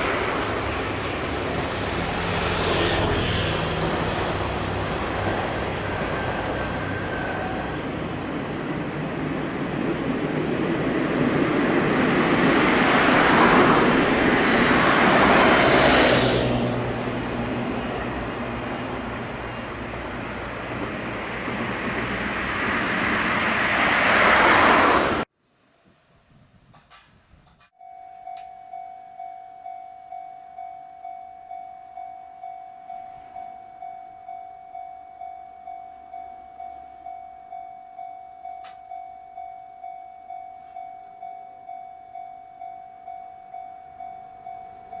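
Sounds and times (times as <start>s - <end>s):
level crossing warning bell: 0.0s - 24.6s, 27.8s - 45.0s
vehicle passing by: 0.0s - 25.3s.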